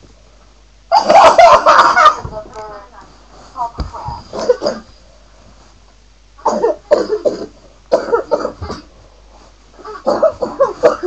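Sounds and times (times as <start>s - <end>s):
person coughing: 4.3s - 4.9s, 6.4s - 9.0s, 9.8s - 11.0s.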